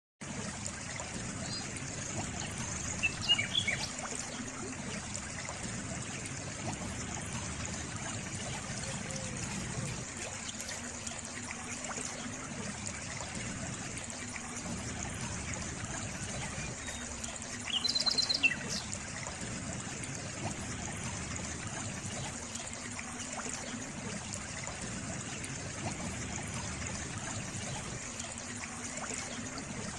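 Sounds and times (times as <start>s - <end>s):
stream trickling and splashing: 0.2s - 29.9s
bird chirps: 17.7s - 18.9s.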